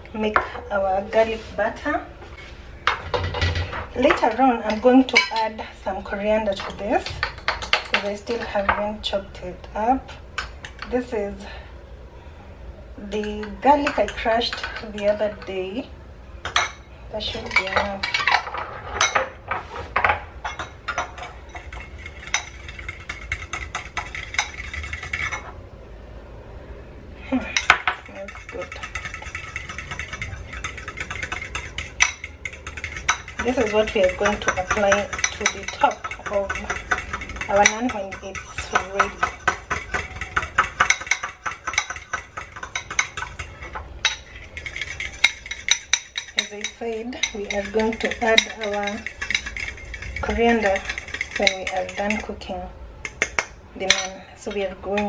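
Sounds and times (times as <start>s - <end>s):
spoon clinking against a bowl: 6.5s - 8.8s, 13.1s - 15.5s, 20.5s - 25.5s, 27.4s - 52.4s, 53.0s - 55.0s.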